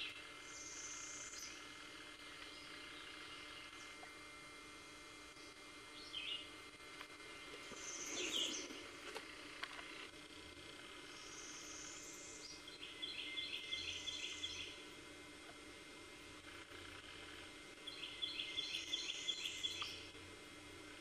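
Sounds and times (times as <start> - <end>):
wild birds chirping: 0.0 - 4.0, 5.4 - 6.6, 7.6 - 9.0, 10.8 - 14.9, 16.5 - 20.1.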